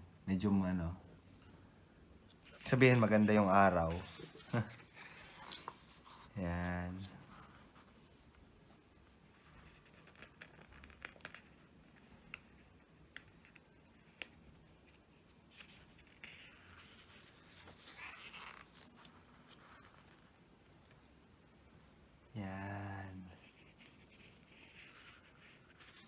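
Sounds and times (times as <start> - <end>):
paper pages rustling: 2.5 - 8.0.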